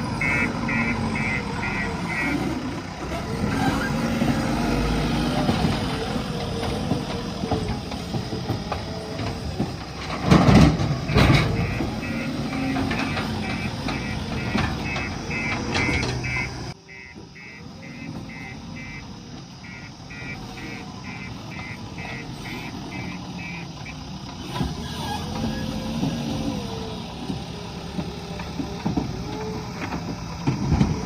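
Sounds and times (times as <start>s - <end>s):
reversing alarm beeping: 0.0s - 2.6s, 10.9s - 24.0s
backhoe engine running: 0.0s - 31.0s.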